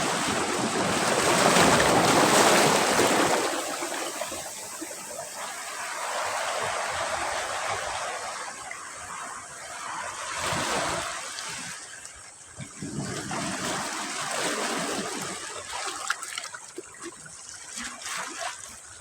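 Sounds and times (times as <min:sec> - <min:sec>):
sea waves breaking: 0:00.0 - 0:12.0.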